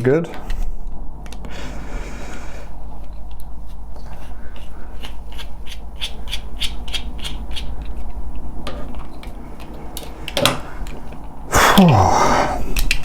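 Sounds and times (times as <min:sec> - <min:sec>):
steady low hum: 0:00.0 - 0:13.0
screwdriver clicking: 0:04.6 - 0:08.2.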